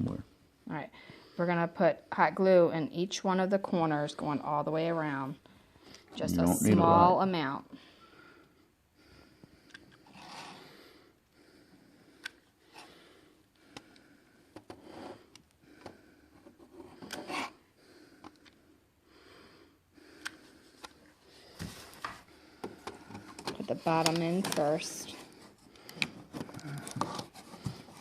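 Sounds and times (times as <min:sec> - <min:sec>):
small handling clicks and scrapes: 0:22.8 - 0:28.0.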